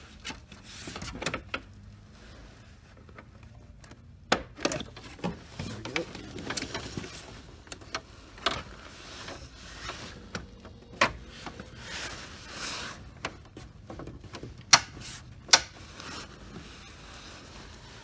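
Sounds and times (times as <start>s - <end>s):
plastic trim panels clicking and rustling: 3.1s - 11.6s, 13.2s - 16.4s
sharp plastic snaps: 14.7s - 15.8s.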